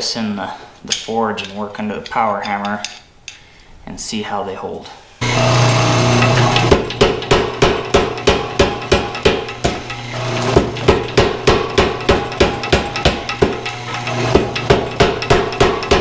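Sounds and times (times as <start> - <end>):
motor humming: 5.2 - 16.0
power hammer striking steel: 5.2 - 16.0.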